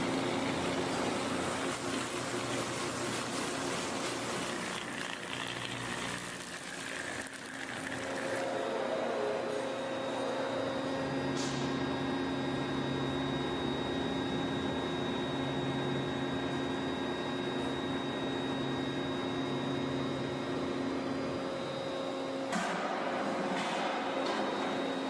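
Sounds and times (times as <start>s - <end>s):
machine humming: 0.0s - 13.0s.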